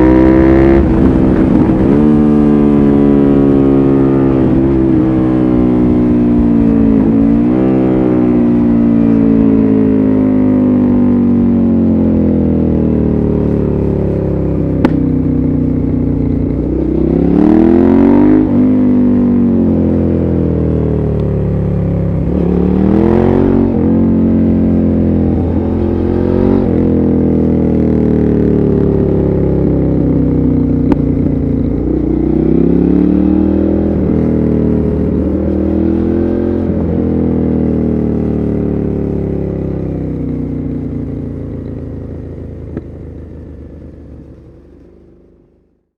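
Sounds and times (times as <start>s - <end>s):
motorcycle engine accelerating: 0.0s - 45.7s.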